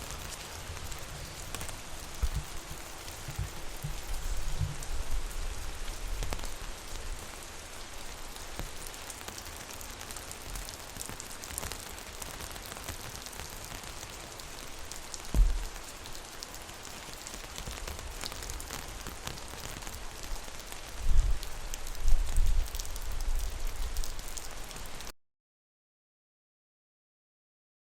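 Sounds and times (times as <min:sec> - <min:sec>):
rain on umbrella: 0:00.0 - 0:25.1
low thuds: 0:15.3 - 0:15.8.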